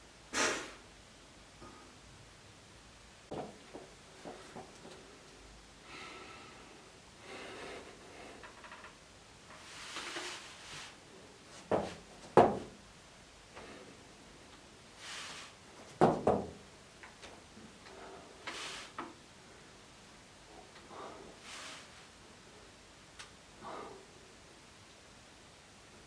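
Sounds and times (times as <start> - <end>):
person breathing: 5.8 - 8.6, 17.8 - 19.0, 20.6 - 22.1, 23.6 - 24.3.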